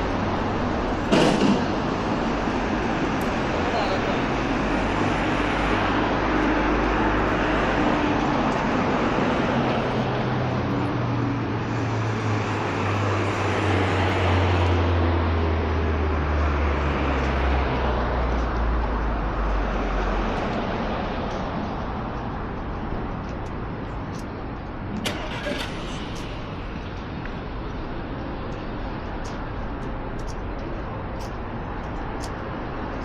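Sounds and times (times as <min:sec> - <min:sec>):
heavy vehicle engine hum: 0:00.0 - 0:33.0
road traffic noise: 0:00.0 - 0:33.0.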